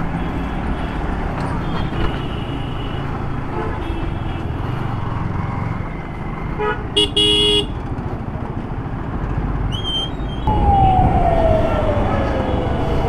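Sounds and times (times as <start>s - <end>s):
traffic engine and road rumble: 0.0s - 13.0s
vehicle horn honking: 6.6s - 7.8s
long falling tone: 10.5s - 13.0s.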